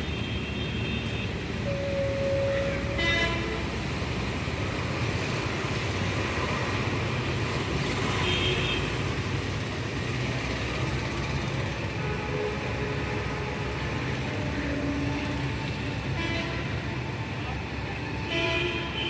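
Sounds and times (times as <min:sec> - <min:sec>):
road traffic rumble: 0:00.0 - 0:19.0
vehicle horn toot: 0:00.8 - 0:03.6
brief high tone: 0:01.6 - 0:03.5.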